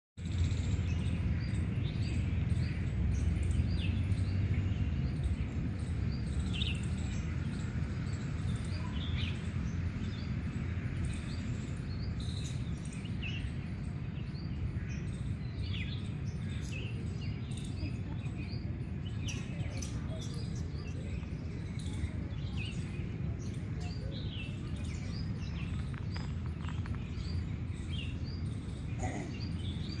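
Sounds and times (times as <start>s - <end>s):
birds chirping and calling: 0.2s - 30.0s
steady low rumble: 0.2s - 30.0s.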